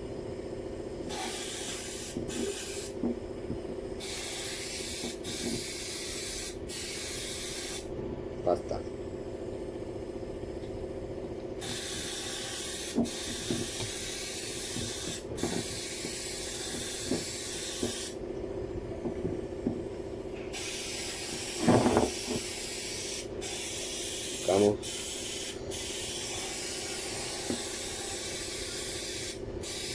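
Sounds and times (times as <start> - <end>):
steady hum: 0.0 - 29.9
hissing spray: 1.1 - 3.0, 4.0 - 7.8, 11.6 - 18.2, 20.5 - 29.9.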